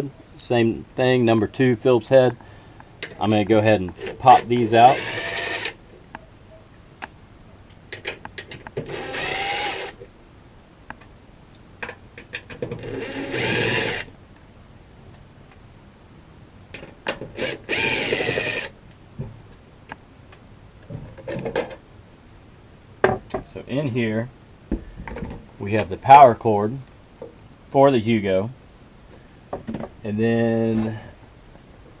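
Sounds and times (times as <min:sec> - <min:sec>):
drill motor whining: 0:03.9 - 0:05.8, 0:08.8 - 0:10.0, 0:12.8 - 0:14.1, 0:17.3 - 0:18.7.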